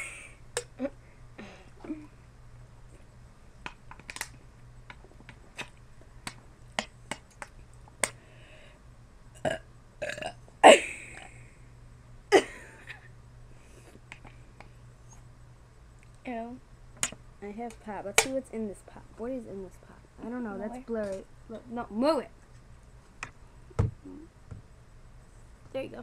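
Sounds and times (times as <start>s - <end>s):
girl burping: 9.4s - 11.3s, 12.3s - 12.8s.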